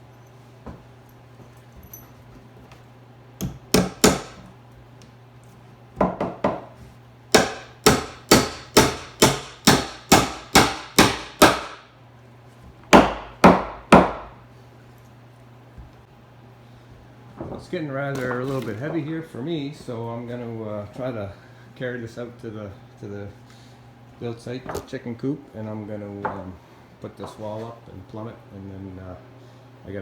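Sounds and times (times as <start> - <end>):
hammer driving nails into wood: 3.4 - 4.5, 7.4 - 11.8.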